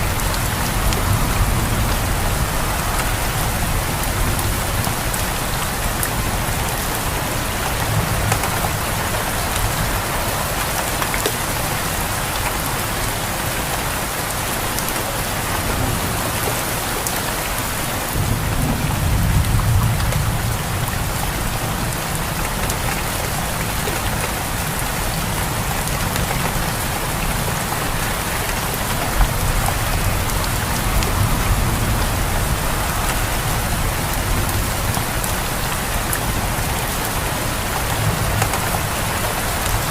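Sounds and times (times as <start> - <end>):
heavy rain falling: 0.0 - 39.9
thunder rolling: 18.0 - 21.9.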